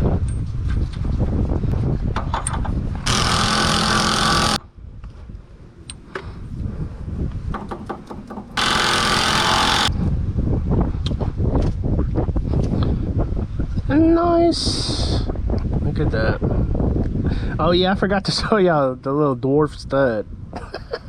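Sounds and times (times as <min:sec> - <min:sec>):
power tool running: 0:03.0 - 0:04.6, 0:08.6 - 0:09.9.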